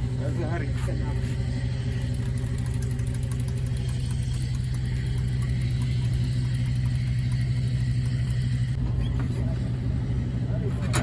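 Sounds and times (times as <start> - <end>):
bulldozer engine running: 0.0 - 11.0
engine knock: 1.9 - 8.8.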